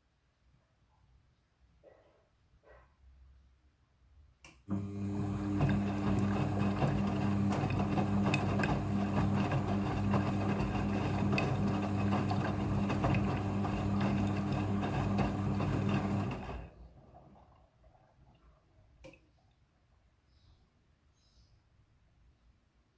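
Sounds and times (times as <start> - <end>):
washing machine running: 4.7 - 18.1.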